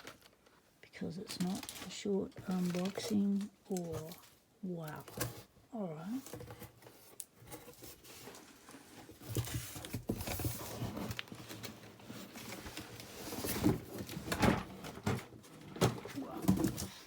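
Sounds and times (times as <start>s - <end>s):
hands rummaging through package: 0.0s - 5.5s.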